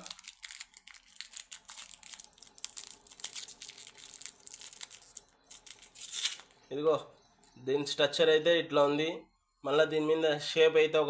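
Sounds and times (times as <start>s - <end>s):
wrapper crinkling: 0.0s - 6.6s.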